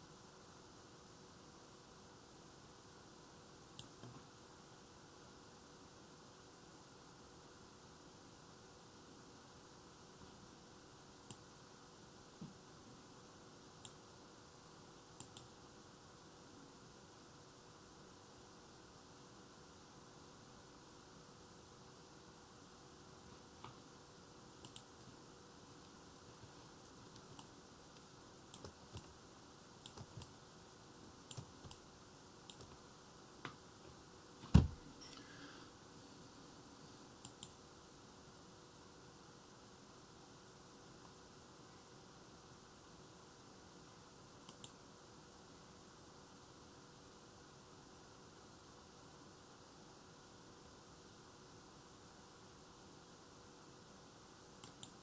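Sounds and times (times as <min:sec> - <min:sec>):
steady low hiss: 0:00.0 - 0:55.0
computer clicks: 0:03.8 - 0:04.2, 0:15.2 - 0:15.5, 0:24.6 - 0:24.9, 0:27.1 - 0:29.2, 0:29.8 - 0:30.4, 0:31.2 - 0:31.8, 0:32.5 - 0:32.8, 0:37.2 - 0:37.6, 0:44.4 - 0:44.8, 0:54.6 - 0:55.0
soft low thump: 0:34.5 - 0:34.8.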